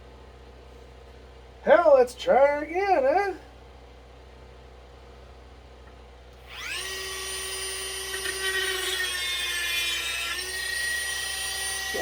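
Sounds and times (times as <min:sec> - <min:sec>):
rotary tool whining: 0:06.4 - 0:12.0.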